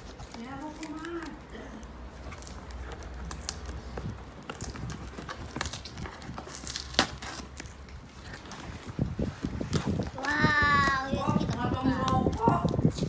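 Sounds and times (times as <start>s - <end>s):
package being opened: 2.2s - 8.7s.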